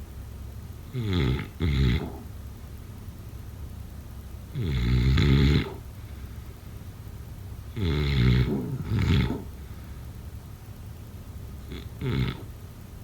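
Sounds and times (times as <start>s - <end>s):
snoring: 0.9s - 2.3s, 4.5s - 5.8s, 7.7s - 9.6s, 11.7s - 12.5s.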